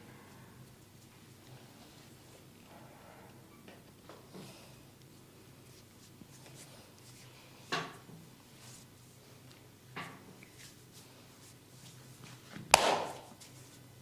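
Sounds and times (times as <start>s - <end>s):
hands rubbing on skin: 5.6s - 7.7s, 8.4s - 9.6s, 10.4s - 12.5s
sharp snaps: 12.7s - 13.3s.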